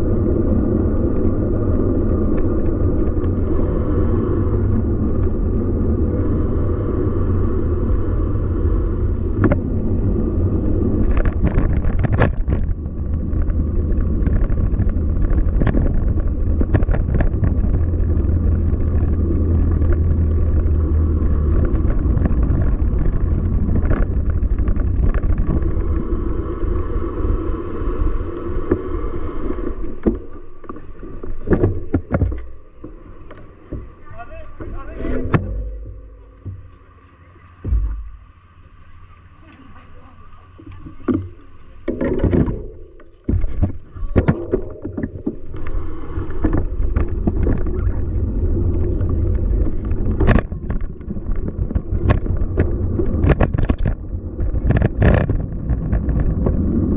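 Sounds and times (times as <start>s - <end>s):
wind and road noise rumble: 0.0s - 56.9s.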